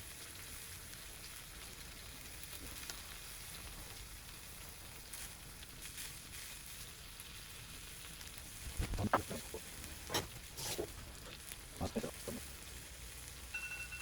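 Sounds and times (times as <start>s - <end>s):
chicken sizzling in a pan: 0.0s - 14.0s
fat popping: 8.7s - 12.4s.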